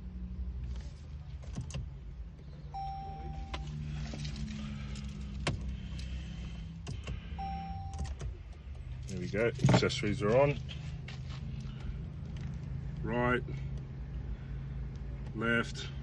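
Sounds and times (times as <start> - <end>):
short electronic beep: 2.7 - 3.6, 7.4 - 8.0.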